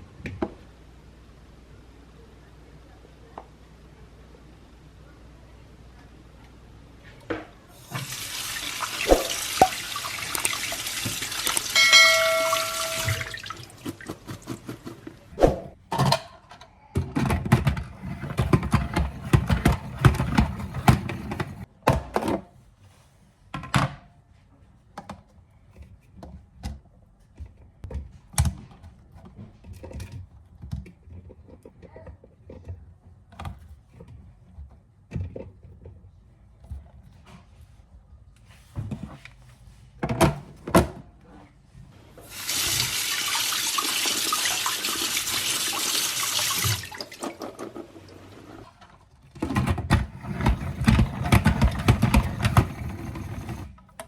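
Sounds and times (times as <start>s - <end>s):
tap water running: 7.8s - 15.3s, 42.2s - 49.0s
produce and containers clattering: 7.8s - 22.4s, 46.4s - 54.0s
brief steady tone: 11.8s - 13.3s.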